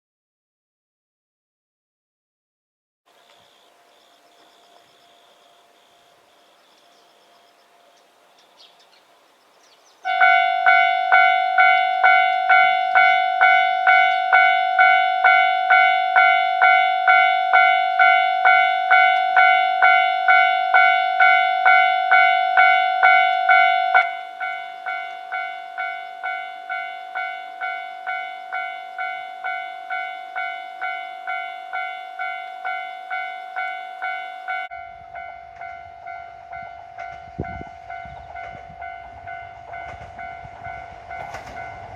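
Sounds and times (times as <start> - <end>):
low rumble of approaching train: 3.1 - 41.9
level crossing alarm ringing: 10.0 - 41.9.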